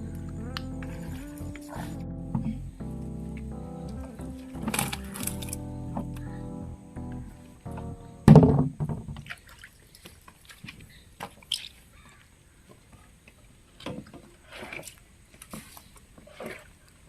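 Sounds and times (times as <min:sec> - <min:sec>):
water dripping and splashing: 0:09.0 - 0:11.8.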